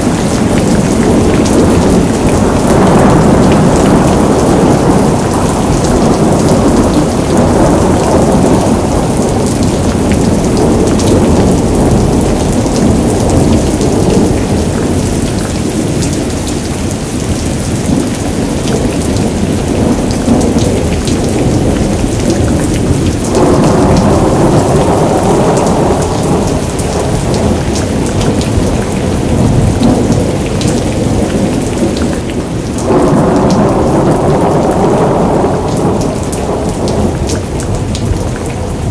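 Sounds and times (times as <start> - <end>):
heavy rain pouring: 0.0 - 38.9
thunder rumbling: 0.0 - 38.9
drops or hailstones ticking: 17.3 - 38.6.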